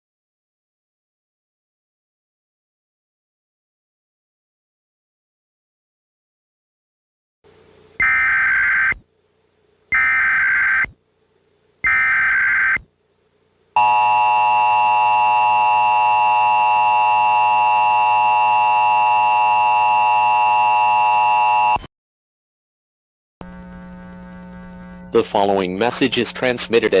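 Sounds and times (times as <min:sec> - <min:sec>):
buzzing data screech: 0:08.0 - 0:09.0, 0:09.9 - 0:11.0, 0:11.8 - 0:12.8.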